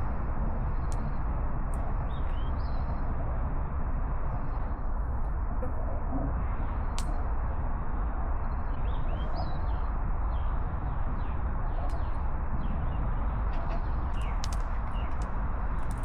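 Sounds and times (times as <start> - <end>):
steady loud background noise: 0.0 - 16.0
small birds chirping: 8.4 - 16.0
sharp clicks: 14.1 - 16.0.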